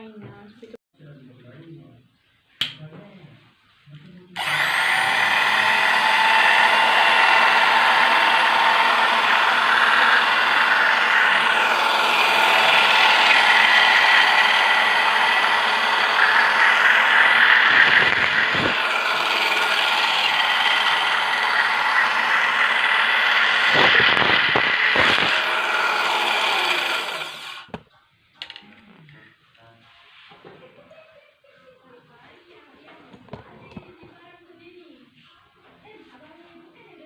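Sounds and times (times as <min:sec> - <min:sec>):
cloth cutting machine running: 0:04.4 - 0:27.8.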